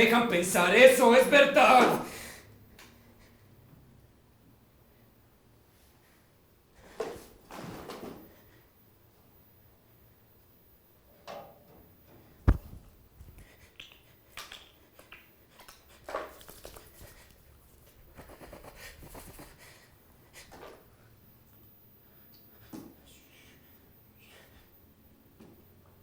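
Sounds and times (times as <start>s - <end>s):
sharp knock: 12.5s - 12.8s
rustling: 12.5s - 13.5s.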